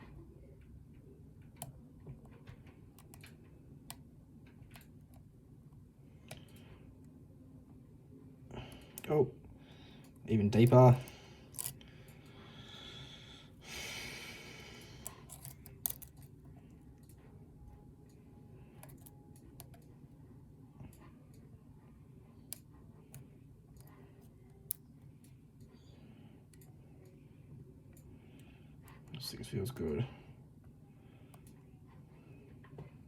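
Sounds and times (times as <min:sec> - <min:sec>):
lock pick metallic clicks: 0:11.0 - 0:11.9, 0:15.0 - 0:17.2, 0:18.8 - 0:19.9
breathy exhale: 0:12.2 - 0:15.1.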